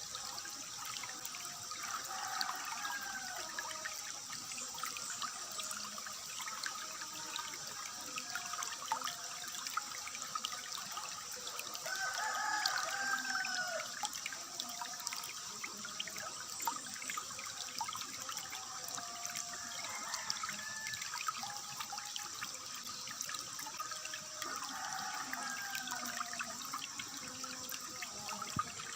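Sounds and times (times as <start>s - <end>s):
water trickling: 0.0s - 28.9s
rooster crowing: 1.9s - 3.8s, 11.8s - 14.0s, 19.4s - 21.6s, 24.4s - 26.6s.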